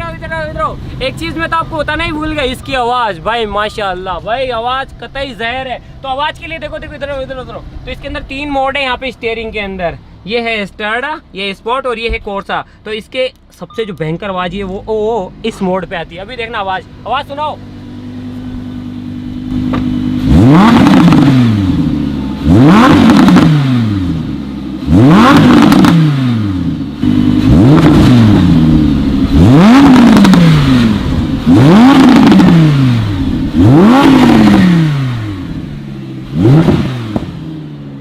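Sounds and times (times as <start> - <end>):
car engine revving: 14.5 - 38.0.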